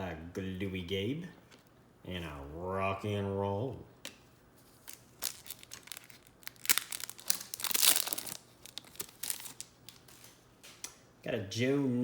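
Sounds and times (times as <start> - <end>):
foil wrapper tearing and crinkling: 4.8 - 10.3.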